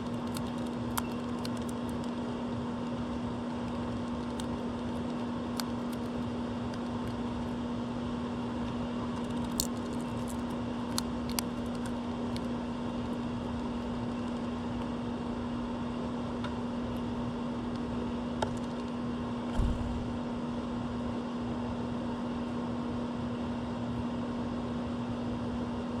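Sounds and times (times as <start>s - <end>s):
sharp clicks: 0.0s - 2.2s
machine hum: 0.0s - 21.0s
dull thump: 19.5s - 20.3s.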